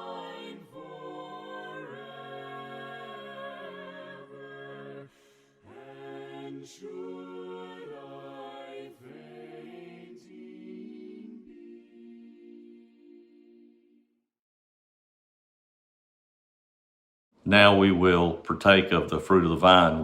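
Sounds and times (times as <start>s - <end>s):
a cappella group singing a hymn: 0.0s - 14.0s
singers breathing: 5.1s - 5.7s.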